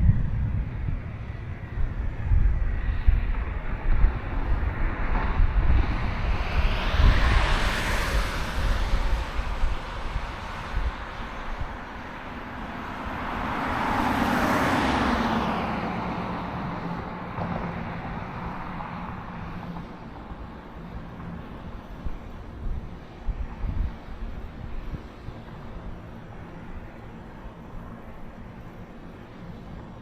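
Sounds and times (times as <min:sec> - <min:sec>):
car passing: 0:00.0 - 0:30.0
wind rumbling on microphone: 0:00.0 - 0:30.0.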